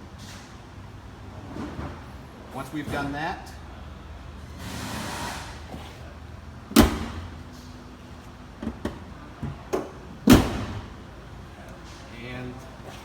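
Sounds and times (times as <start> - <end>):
car hood slamming shut: 6.7 - 7.4, 9.8 - 11.0.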